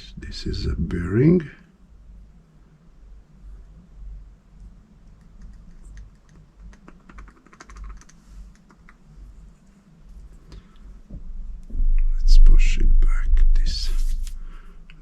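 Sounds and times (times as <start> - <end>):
low handling rumble: 11.0 - 15.0.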